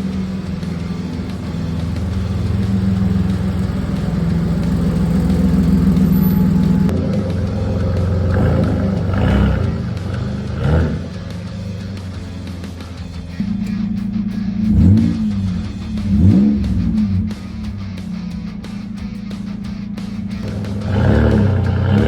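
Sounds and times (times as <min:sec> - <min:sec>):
car engine running and revving: 0:00.0 - 0:22.0.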